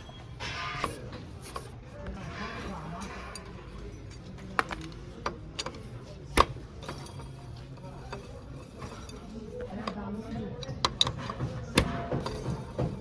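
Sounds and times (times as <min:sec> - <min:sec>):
tools knocking and clinking: 0:03.0 - 0:13.0.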